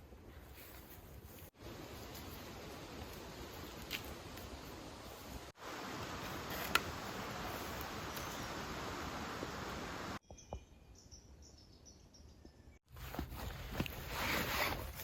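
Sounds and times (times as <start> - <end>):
steady rain: 4.2 - 10.2.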